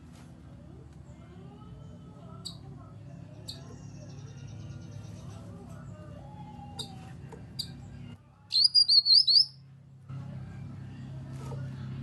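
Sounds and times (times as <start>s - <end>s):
faint chirps: 8.5s - 9.6s
bird whistling high notes: 8.6s - 9.5s.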